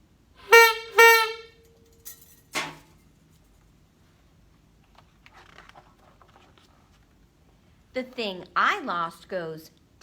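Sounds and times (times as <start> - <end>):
trumpet toots: 0.4 - 1.6.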